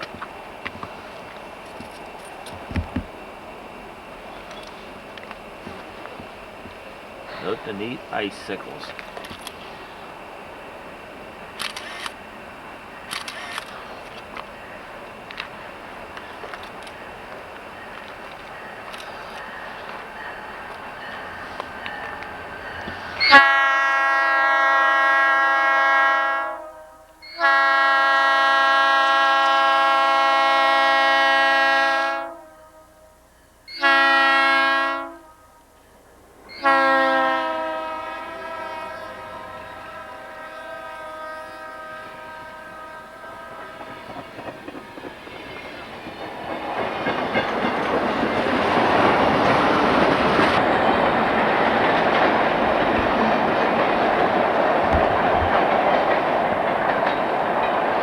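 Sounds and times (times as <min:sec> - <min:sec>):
train wheels rumbling on rails: 0:00.0 - 0:26.0, 0:33.1 - 0:58.0
locomotive air horn blasts: 0:22.8 - 0:44.3.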